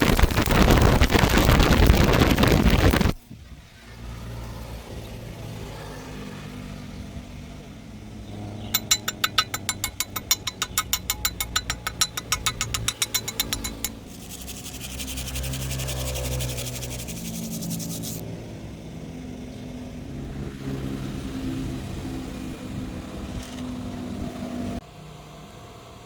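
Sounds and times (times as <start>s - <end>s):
rapid ticking clicks: 8.8s - 18.2s.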